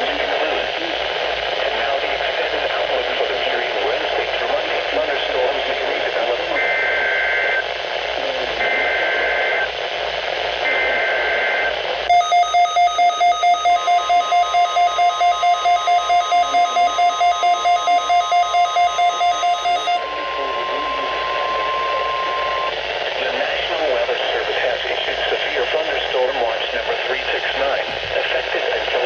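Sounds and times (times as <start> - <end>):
rapid electronic alert beeping: 10.7 - 22.7
data tone bursts: 10.7 - 22.8
steady warning tone: 10.7 - 22.8.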